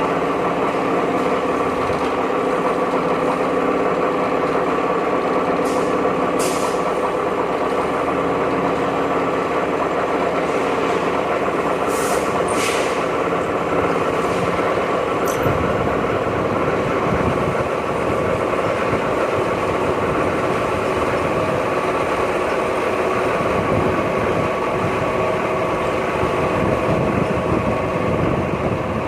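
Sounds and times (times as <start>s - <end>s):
heavy engine running: 0.0s - 29.0s
air hissing: 5.6s - 6.9s, 11.8s - 13.1s.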